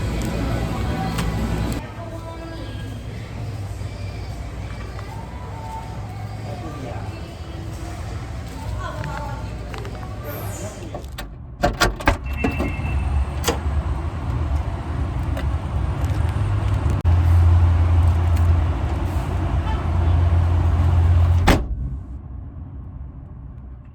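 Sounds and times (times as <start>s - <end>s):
car rumbling in motion: 0.0s - 23.9s
sharp thump: 21.4s - 21.9s.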